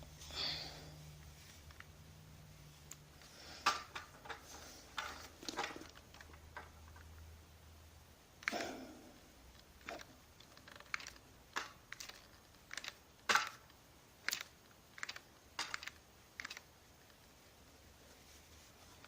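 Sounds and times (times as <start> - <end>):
toy rifle plastic snaps and clacks: 9.6 - 17.2.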